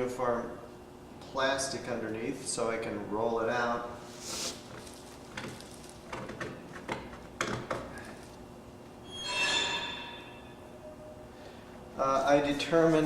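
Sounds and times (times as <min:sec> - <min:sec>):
plastic sheet rustling: 0:04.2 - 0:06.1
squeaky screech: 0:09.0 - 0:10.6.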